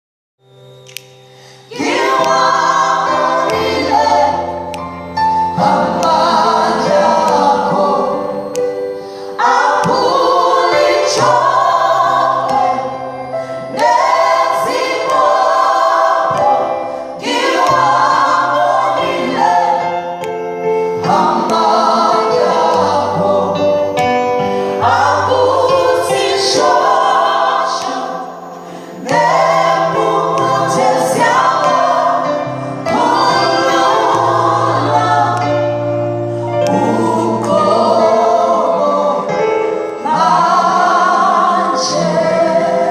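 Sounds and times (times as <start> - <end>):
gospel choir singing: 1.4 - 42.9.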